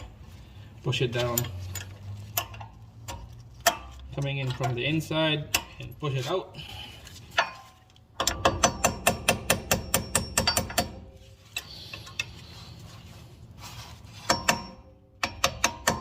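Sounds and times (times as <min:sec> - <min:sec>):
hammer tapping metal punch: 0:08.2 - 0:11.1, 0:14.3 - 0:16.0.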